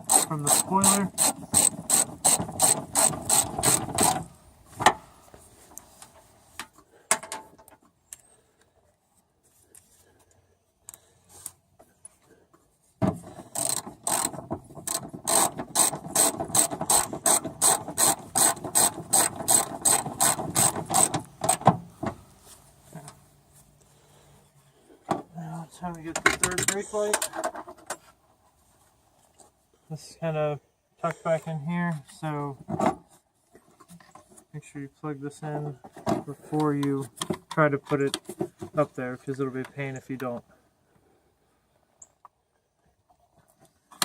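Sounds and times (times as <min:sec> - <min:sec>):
socket ratchet clicking: 0:13.5 - 0:21.6.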